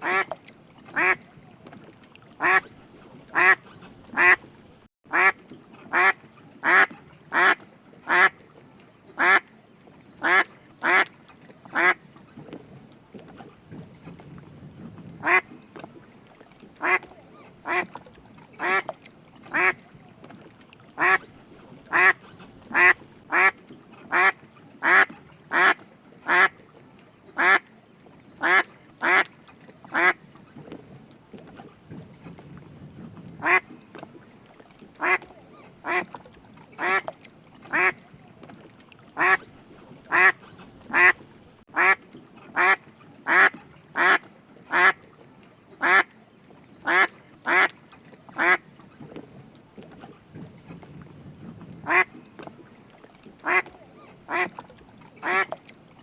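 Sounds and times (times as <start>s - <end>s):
duck quacking: 0.0s - 0.3s, 1.0s - 1.2s, 2.4s - 2.6s, 3.3s - 4.4s, 5.1s - 8.3s, 9.2s - 9.4s, 10.2s - 11.1s, 15.2s - 15.5s, 16.8s - 17.0s, 17.6s - 17.8s, 18.6s - 18.9s, 19.5s - 19.8s, 21.0s - 21.2s, 21.9s - 26.5s, 28.4s - 29.3s, 29.9s - 30.2s, 33.4s - 33.6s, 35.0s - 35.2s, 35.8s - 36.0s, 36.8s - 37.0s, 37.7s - 38.0s, 39.2s - 39.4s, 40.1s - 41.2s, 41.8s - 42.0s, 42.6s - 45.0s, 45.8s - 46.1s, 46.9s - 47.7s, 51.9s - 52.1s, 53.4s - 53.7s, 54.3s - 54.5s.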